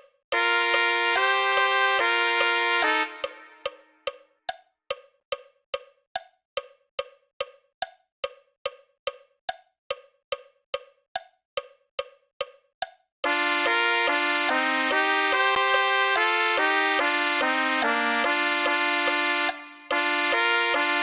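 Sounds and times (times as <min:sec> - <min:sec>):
trumpet sustained notes: 0:00.4 - 0:03.8, 0:13.2 - 0:21.0
metronome clicking: 0:01.5 - 0:13.0.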